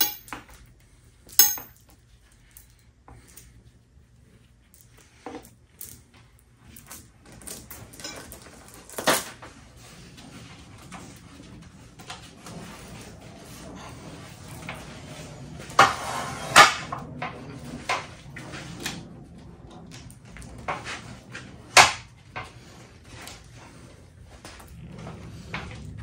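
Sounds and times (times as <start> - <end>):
chain links clicking and rattling: 0.0 - 0.5, 1.3 - 2.8, 6.7 - 9.3.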